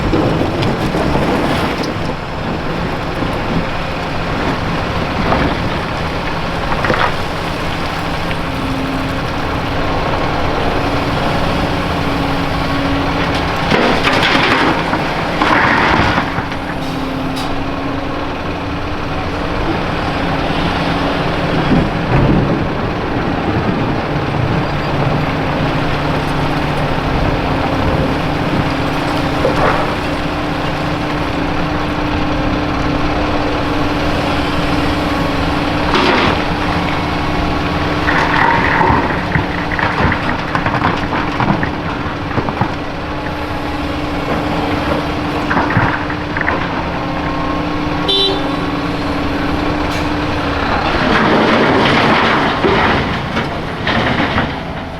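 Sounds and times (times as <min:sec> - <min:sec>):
concrete clattering and scraping: 0:00.0 - 0:17.7, 0:24.9 - 0:32.4, 0:35.4 - 0:42.9, 0:49.3 - 0:54.9
excavator engine humming: 0:00.0 - 0:54.9.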